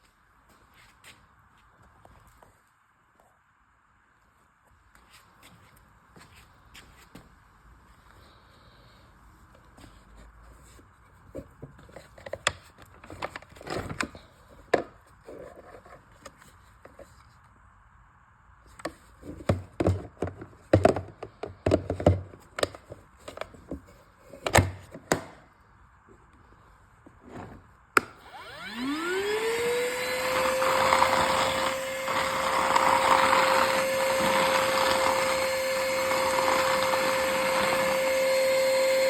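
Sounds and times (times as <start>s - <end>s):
vacuum cleaner motor whining: 28.0s - 39.0s.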